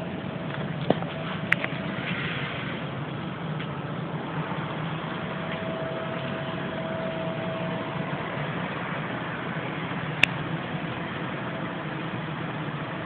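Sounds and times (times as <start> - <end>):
low humming drone: 0.0 - 13.0
noisy hiss: 0.0 - 13.0
faint high tone: 5.0 - 9.4.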